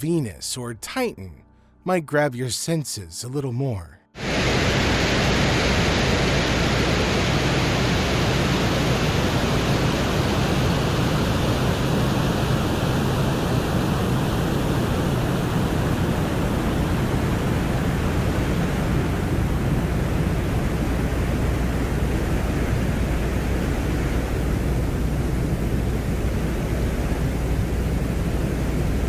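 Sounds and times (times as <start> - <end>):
steady rushing noise: 4.2 - 12.2.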